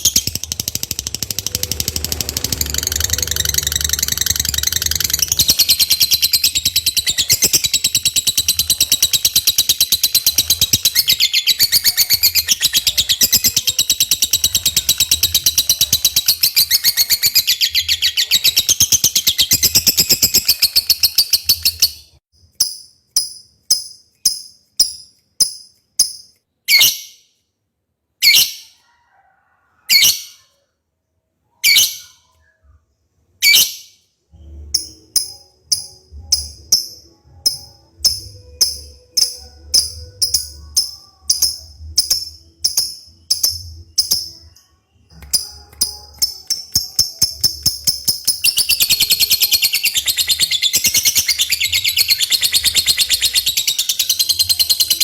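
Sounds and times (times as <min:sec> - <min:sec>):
lovebird trilling: 0:00.0 - 0:21.8.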